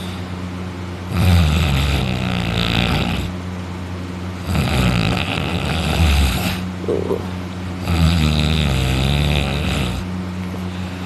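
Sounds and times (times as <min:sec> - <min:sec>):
steady low hum: 0:00.0 - 0:11.0
man snoring loudly: 0:01.1 - 0:03.4, 0:04.4 - 0:06.7, 0:07.8 - 0:10.1.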